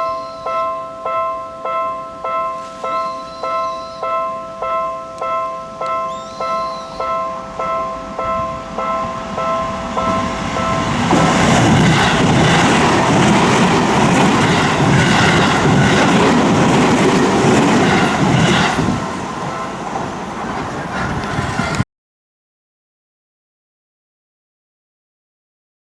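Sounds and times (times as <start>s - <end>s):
level-crossing warning bell: 0.0s - 21.8s
train wheels clacking: 2.3s - 21.8s.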